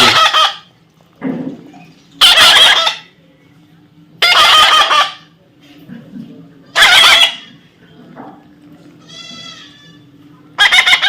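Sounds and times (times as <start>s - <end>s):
parrot screeching: 0.0s - 0.7s, 2.2s - 3.1s, 4.2s - 5.2s, 6.8s - 7.5s, 9.0s - 11.0s.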